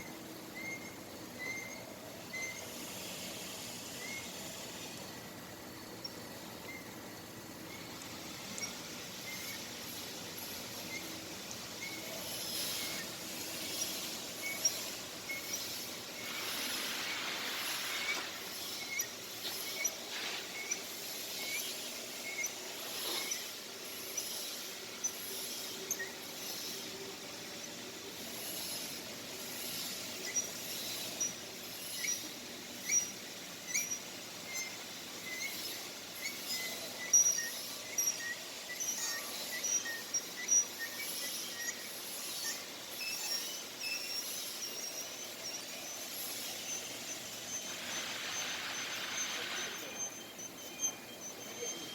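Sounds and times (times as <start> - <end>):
outdoor background hiss: 0.0 - 51.9.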